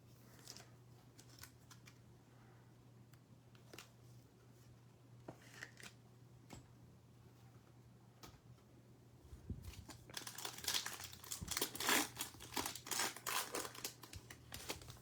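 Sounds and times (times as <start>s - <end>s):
wrapper tearing and crinkling: 9.8s - 15.0s.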